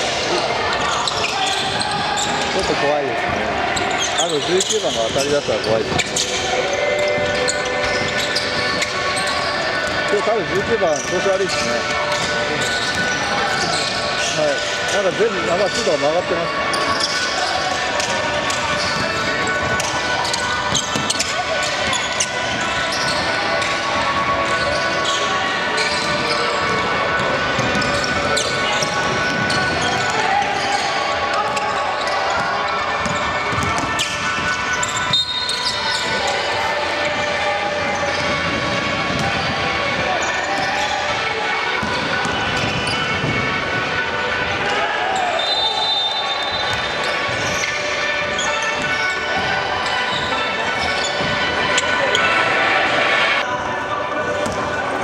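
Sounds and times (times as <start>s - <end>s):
background crowd din: 0.0s - 55.0s
shoe squeaks on court: 0.2s - 2.9s, 3.7s - 44.1s, 44.7s - 52.7s
basketball bouncing on court: 17.9s - 24.5s, 31.5s - 36.1s, 41.7s - 43.8s, 54.4s - 54.7s
basketball bouncing: 32.3s - 35.0s, 41.8s - 43.8s, 54.4s - 54.7s.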